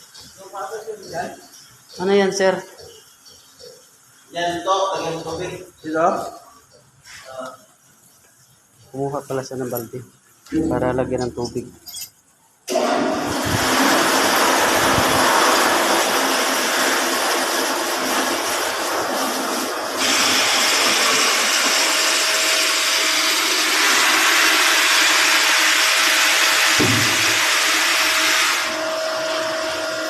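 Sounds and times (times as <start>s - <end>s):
machine running with loud hiss: 0.0s - 6.4s, 12.7s - 30.0s.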